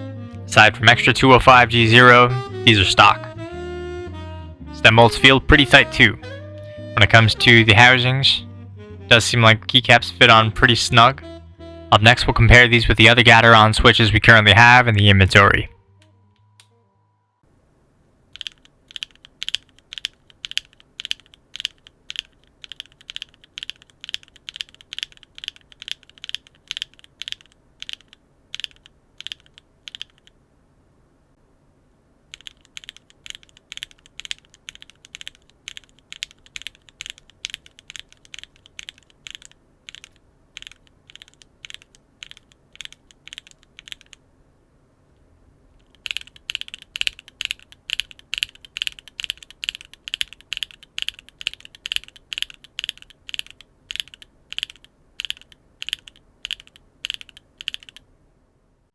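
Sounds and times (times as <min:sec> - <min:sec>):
mechanical keyboard switches clacking: 0:18.4 - 0:30.3, 0:32.3 - 0:44.2, 0:45.8 - 0:58.0.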